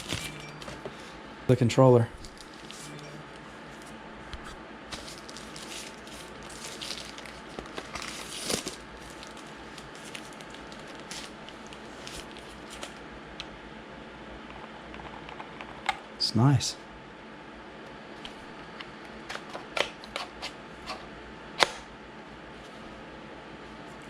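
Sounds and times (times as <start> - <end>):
packaging rustling and clicks: 0.0 - 0.9, 4.9 - 13.0.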